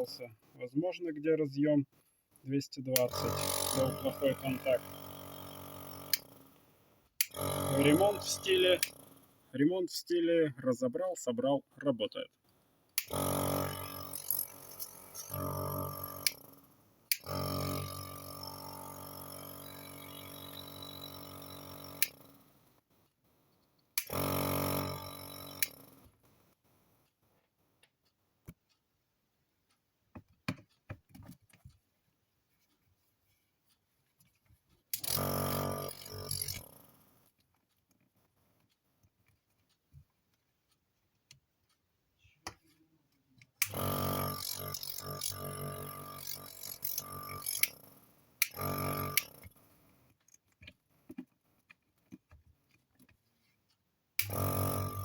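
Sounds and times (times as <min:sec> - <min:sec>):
compressor humming: 0:03.0 - 0:06.6, 0:07.2 - 0:09.2, 0:13.0 - 0:19.4, 0:48.4 - 0:49.4, 0:54.2 - 0:55.0
piston pump buzzing hum: 0:03.0 - 0:09.5, 0:13.0 - 0:22.8, 0:24.0 - 0:26.3, 0:34.9 - 0:37.0, 0:43.6 - 0:49.8, 0:54.2 - 0:55.0.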